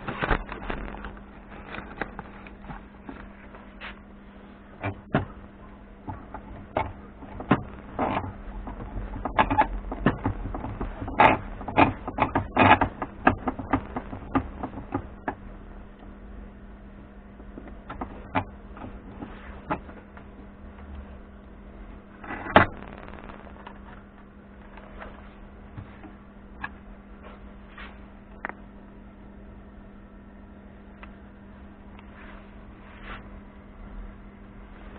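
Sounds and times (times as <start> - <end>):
steady low hum: 0.0 - 34.9
hard objects clicking and knocking: 6.1 - 15.4.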